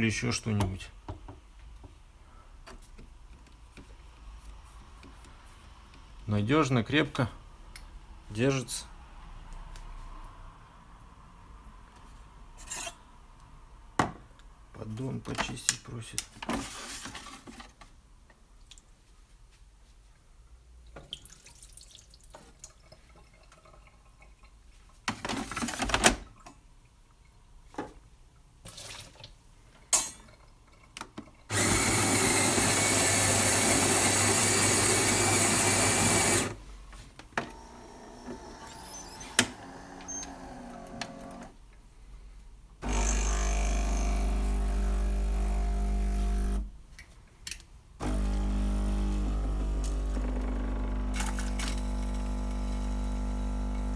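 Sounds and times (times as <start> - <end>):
coffee machine whirring: 31.5 - 36.6, 37.4 - 41.5, 42.8 - 46.7, 48.0 - 53.9
low-humming pump: 42.8 - 46.6, 48.0 - 53.9.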